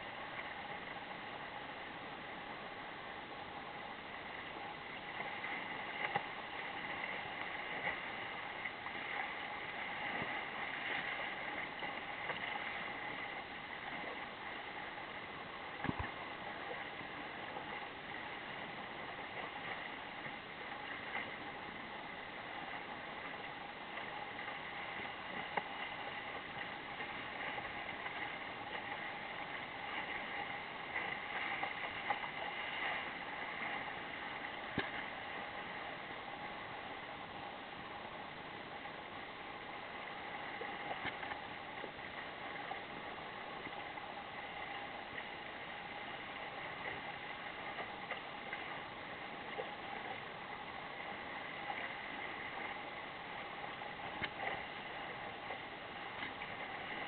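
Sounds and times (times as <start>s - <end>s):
water rushing along hull: 0.0s - 57.0s.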